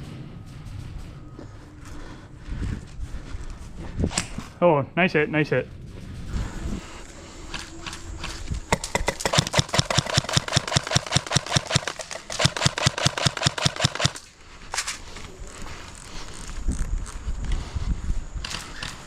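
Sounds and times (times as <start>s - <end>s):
airsoft gun rapid firing: 8.7s - 14.2s.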